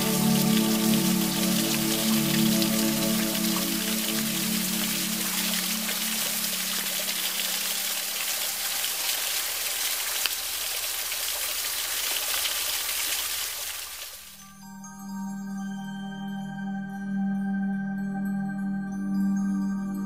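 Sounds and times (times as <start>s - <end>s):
background music: 0.0s - 7.2s, 14.4s - 20.0s
waterfall rushing and splashing: 0.0s - 14.3s.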